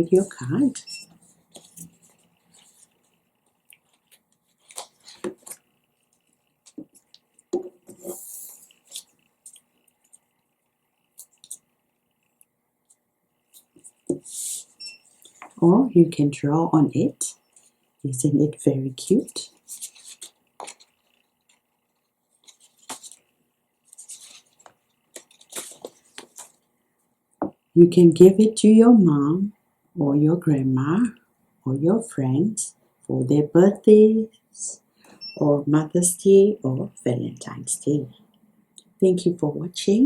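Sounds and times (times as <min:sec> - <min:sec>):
paper card rustling and tapping: 0:03.8 - 0:05.6, 0:19.8 - 0:21.6, 0:22.4 - 0:23.2, 0:24.0 - 0:26.6.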